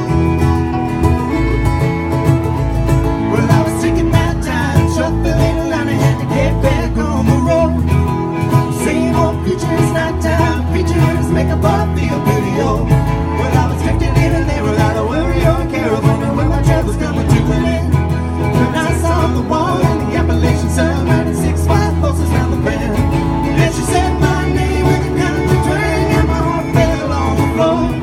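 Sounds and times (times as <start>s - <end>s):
bass: 0.0s - 28.0s
fiddle: 0.0s - 28.0s
picked guitar: 0.0s - 28.0s.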